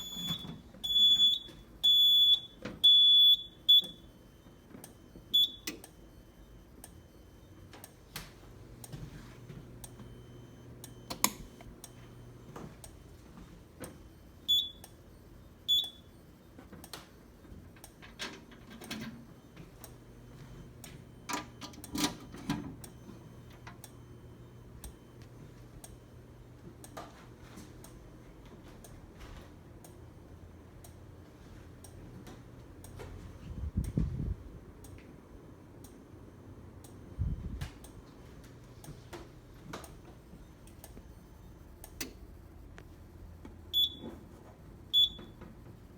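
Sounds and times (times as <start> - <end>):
short high-pitched beeps: 0.0 - 4.1, 15.7 - 16.2, 43.7 - 44.0.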